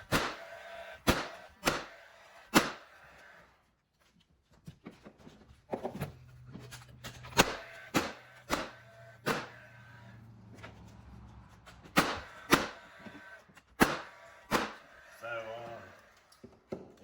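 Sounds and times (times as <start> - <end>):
nail gun shots: 0.0 - 3.0, 7.3 - 9.7, 11.8 - 13.1, 13.7 - 15.0.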